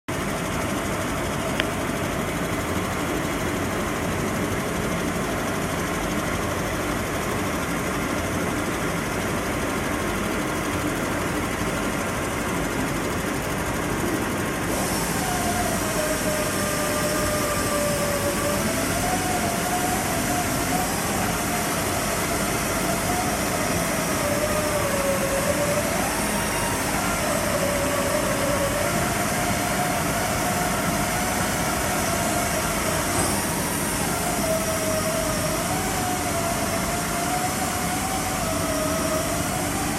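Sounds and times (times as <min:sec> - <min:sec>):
machine tool running: 0:00.2 - 0:39.9
bright cutting hiss: 0:14.7 - 0:38.0
wavering tone: 0:14.7 - 0:39.9.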